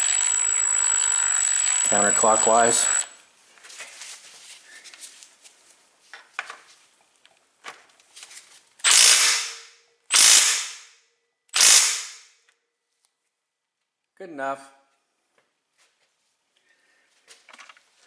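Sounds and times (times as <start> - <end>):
impact wrench bursts: 0.0 - 3.2, 8.8 - 10.8, 11.6 - 12.2.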